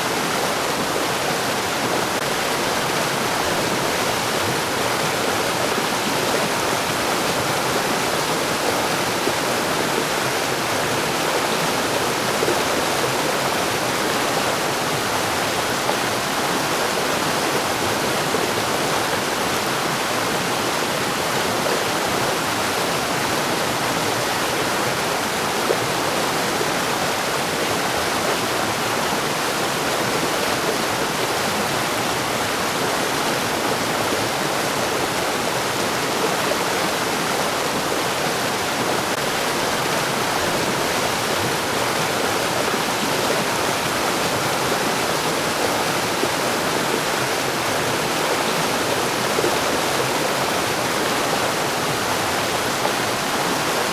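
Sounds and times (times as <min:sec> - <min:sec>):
stream rushing over rocks: 0:00.0 - 0:53.9.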